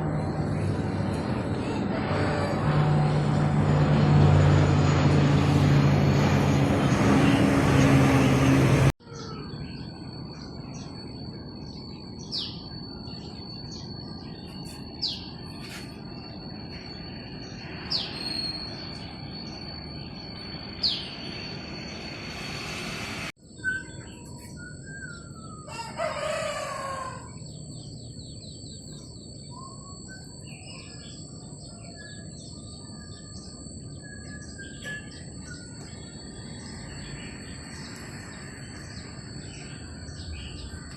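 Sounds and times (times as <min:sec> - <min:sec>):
aircraft engines droning: 0:00.0 - 0:40.9
insect drone: 0:00.0 - 0:40.9
rooster crowing: 0:01.6 - 0:03.1, 0:25.6 - 0:27.6
birds chirping: 0:04.5 - 0:40.9.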